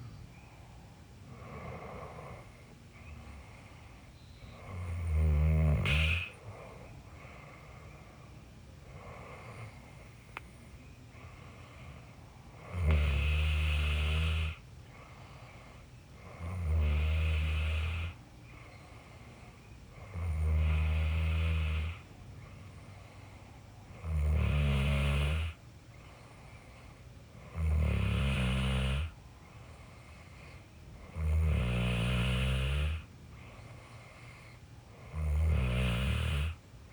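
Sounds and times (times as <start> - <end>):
person snoring: 4.6 - 6.6, 12.6 - 14.6, 16.2 - 18.2, 20.0 - 22.0, 23.9 - 25.6, 27.5 - 29.1, 31.1 - 33.0, 35.0 - 36.6.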